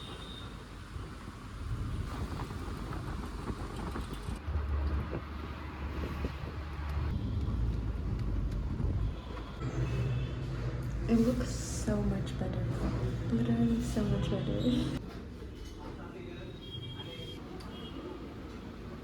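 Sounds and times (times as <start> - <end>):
vehicle rumble in traffic: 0.0 - 15.0.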